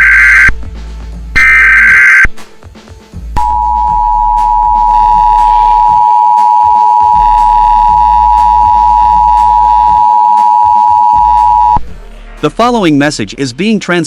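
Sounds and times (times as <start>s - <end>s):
two-tone alarm: 0.0s - 0.6s, 1.4s - 2.3s, 3.4s - 11.8s.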